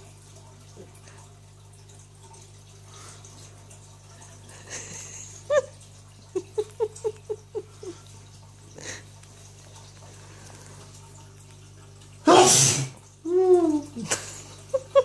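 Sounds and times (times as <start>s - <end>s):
man sneezing: 12.3s - 13.0s
short pitched vocal pulses: 12.3s - 13.8s.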